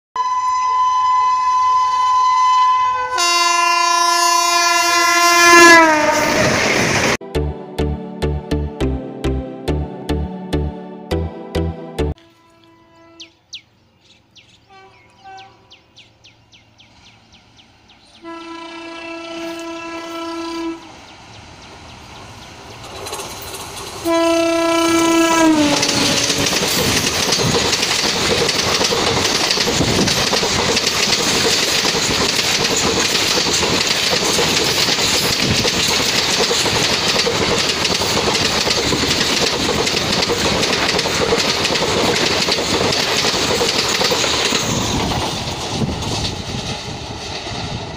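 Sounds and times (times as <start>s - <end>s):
locomotive horn blasts: 0.2s - 6.6s, 12.2s - 13.4s, 14.7s - 15.8s, 18.2s - 21.0s, 24.0s - 26.5s
train wheels clattering on track: 21.6s - 47.9s.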